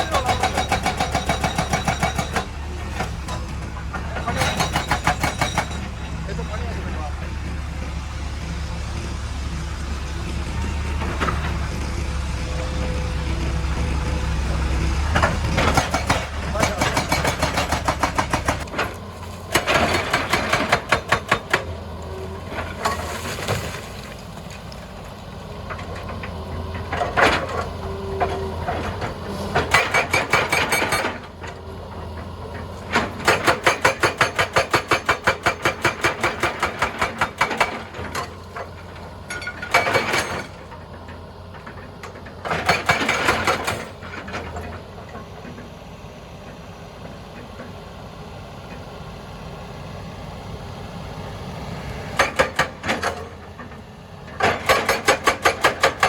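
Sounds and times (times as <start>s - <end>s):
hydraulic breaker hammering rock: 0.0s - 7.6s, 13.2s - 21.8s, 29.0s - 31.3s, 32.9s - 38.4s, 42.4s - 44.7s, 52.2s - 53.6s, 54.3s - 56.0s
diesel engine running: 0.0s - 56.0s.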